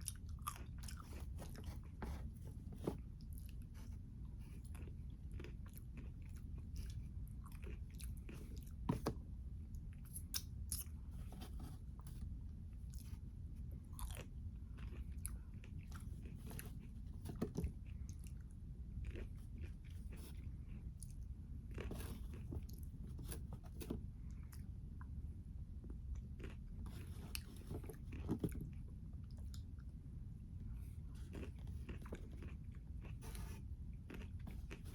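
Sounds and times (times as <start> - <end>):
steady low hum: 0.0 - 34.9
person chewing and biting food: 14.0 - 16.6, 31.2 - 34.9.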